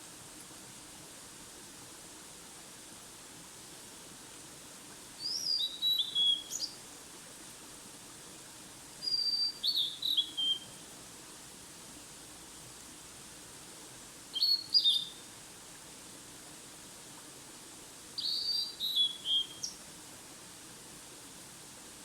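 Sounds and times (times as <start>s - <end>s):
mountain stream hissing: 0.0s - 22.0s
songbird whistling: 5.2s - 6.8s, 9.0s - 10.8s, 14.3s - 15.2s, 18.2s - 19.8s.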